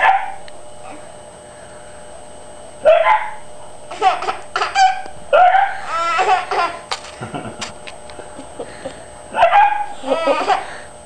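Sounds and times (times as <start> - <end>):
baby laughing: 3.9 - 5.1, 5.9 - 7.7, 10.0 - 10.8.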